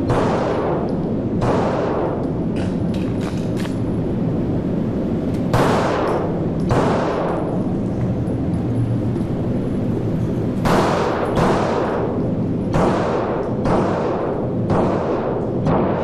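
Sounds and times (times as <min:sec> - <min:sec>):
pistol shots with echo: 0:00.0 - 0:02.8, 0:05.5 - 0:07.7, 0:10.6 - 0:16.0
steady rushing background noise: 0:00.0 - 0:16.0.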